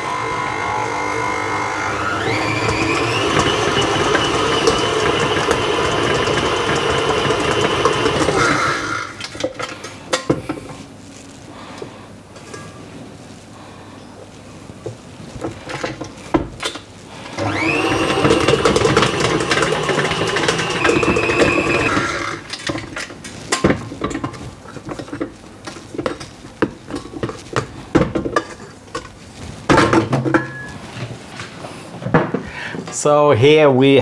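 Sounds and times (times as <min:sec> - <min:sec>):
stand mixer motor: 0:00.0 - 0:09.4, 0:17.3 - 0:22.8.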